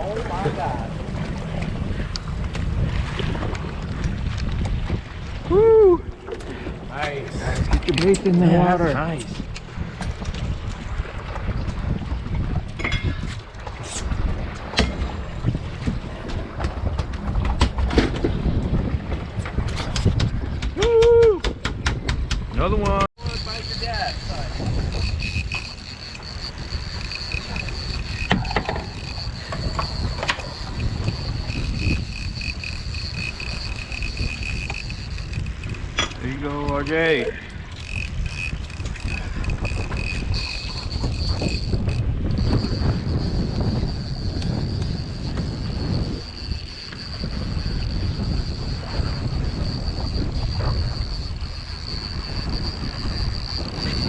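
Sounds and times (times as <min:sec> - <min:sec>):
boat engine rumble: 0:00.0 - 0:54.0
wind on microphone: 0:00.0 - 0:54.0
high-pitched whine: 0:23.2 - 0:35.8, 0:37.8 - 0:54.0.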